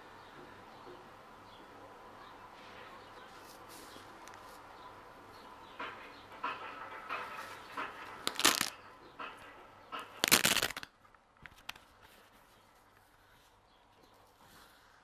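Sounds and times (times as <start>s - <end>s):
rustling and handling noises: 2.6s - 4.8s, 6.5s - 15.0s.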